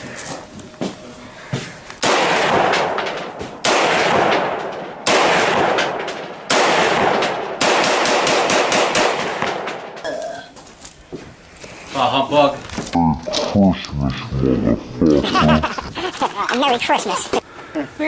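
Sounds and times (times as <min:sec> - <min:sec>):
echoing gunshots: 0:02.0 - 0:10.0.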